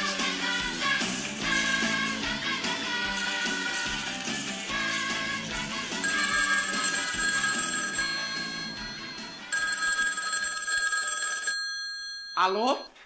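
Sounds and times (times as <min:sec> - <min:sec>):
background music: 0:00.0 - 0:11.8
telephone ringing: 0:06.0 - 0:13.0.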